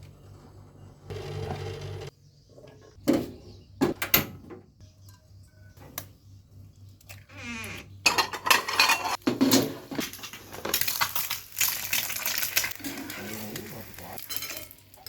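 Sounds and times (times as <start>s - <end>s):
busy kitchenware clattering: 7.9s - 11.4s, 12.0s - 15.0s.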